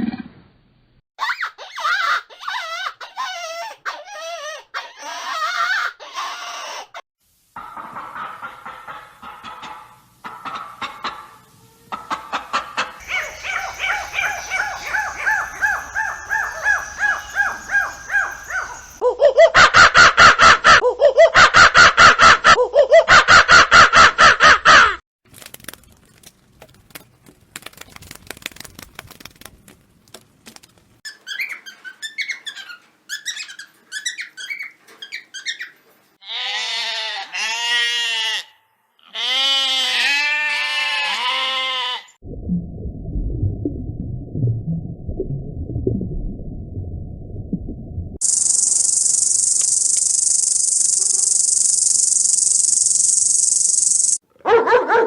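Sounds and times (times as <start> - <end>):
rapid squawking calls: 13.0 - 19.0, 48.2 - 54.2
pitched animal calls: 13.0 - 20.5, 48.2 - 54.2
sheep bleating: 36.2 - 42.1
short chirps: 48.2 - 54.2.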